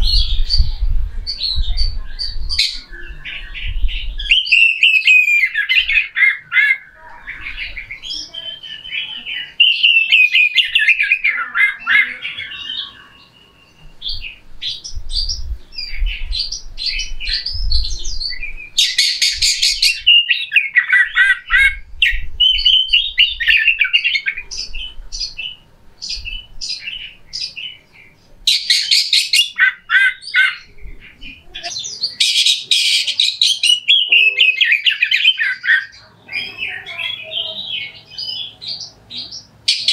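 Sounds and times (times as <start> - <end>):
bird singing whistled phrases: 0.0 - 6.8, 7.6 - 24.9, 31.7 - 38.6.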